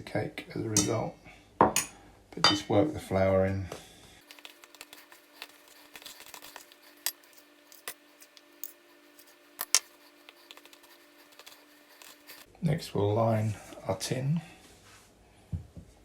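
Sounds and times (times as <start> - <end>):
utensil scraping a mixing bowl: 4.2 - 12.5.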